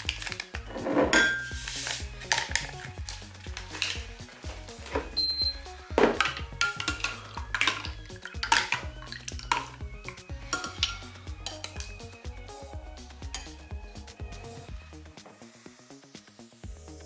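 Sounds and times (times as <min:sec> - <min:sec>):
background music: 0:00.0 - 0:17.0
cutlery clinking against dishes: 0:01.0 - 0:01.5.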